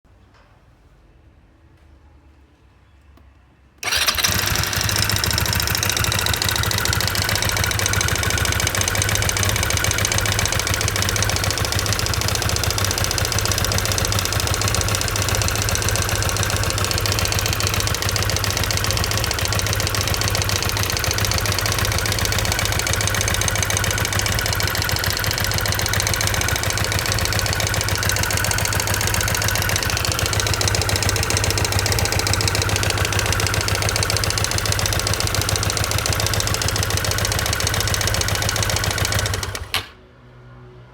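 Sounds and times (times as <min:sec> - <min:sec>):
car engine running: 0:03.8 - 0:39.8.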